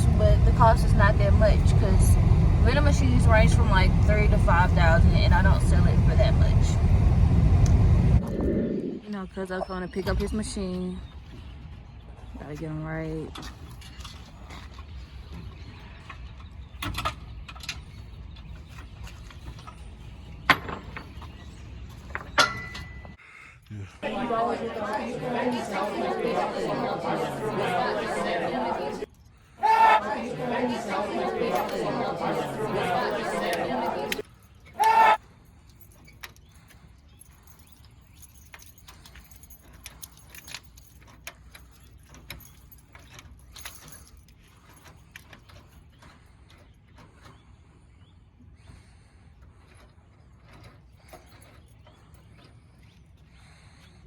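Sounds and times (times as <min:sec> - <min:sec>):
car cabin rumble: 0:00.0 - 0:08.4
low background hum: 0:00.0 - 0:54.0.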